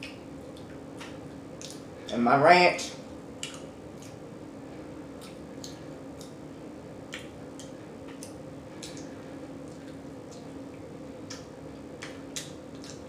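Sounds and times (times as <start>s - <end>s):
person chewing: 0.0s - 1.9s, 3.4s - 4.2s, 5.1s - 6.4s, 7.0s - 13.0s
wet lip smacks: 3.4s - 4.2s, 7.1s - 9.1s, 11.2s - 13.0s.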